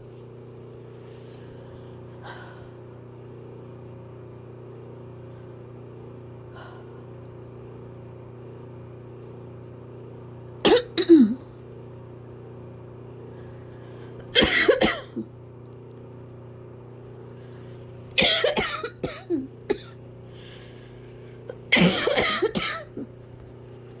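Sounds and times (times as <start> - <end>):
fan humming: 0.0 - 24.0
person coughing hard: 10.6 - 11.5, 14.3 - 15.3, 18.2 - 20.0, 21.6 - 23.2.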